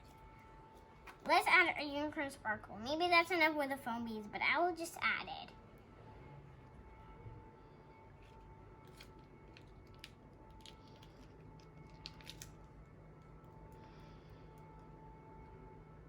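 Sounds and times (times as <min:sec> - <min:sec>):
faint steady hum: 0:00.0 - 0:16.0
packet crinkling and clicking: 0:08.3 - 0:12.6.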